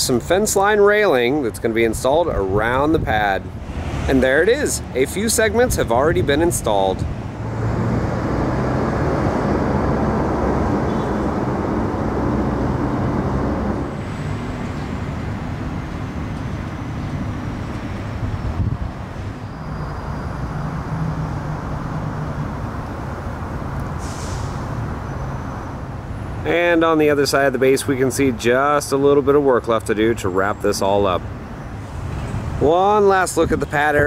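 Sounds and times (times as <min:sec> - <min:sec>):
road traffic passing: 0:00.0 - 0:34.0
low engine hum: 0:07.0 - 0:25.5.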